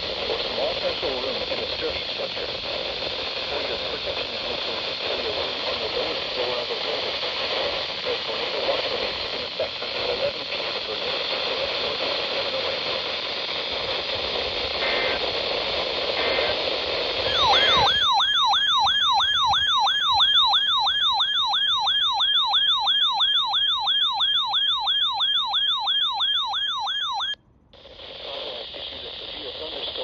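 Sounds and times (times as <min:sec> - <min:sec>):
radio hiss: 0:00.0 - 0:18.1, 0:27.8 - 0:30.0
short data bursts: 0:14.7 - 0:15.4, 0:16.1 - 0:29.0
weather radio alert siren: 0:14.8 - 0:15.4, 0:16.1 - 0:27.4.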